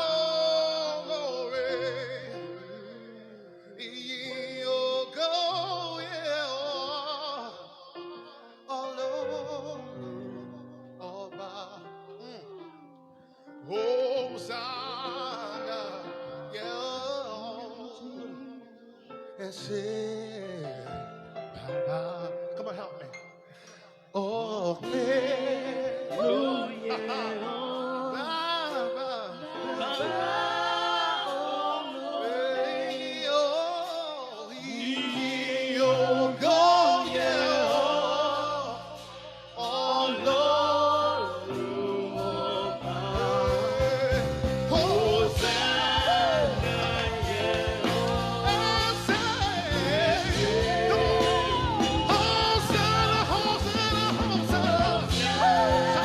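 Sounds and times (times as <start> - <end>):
person singing worship song: 0.0 - 56.0
held keyboard chords: 34.6 - 56.0
bass and drums: 43.0 - 56.0.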